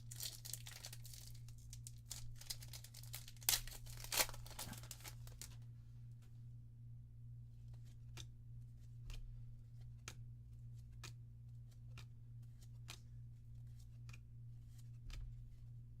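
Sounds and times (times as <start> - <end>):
steady low hum: 0.0 - 16.0
trading cards snapping: 2.0 - 5.5.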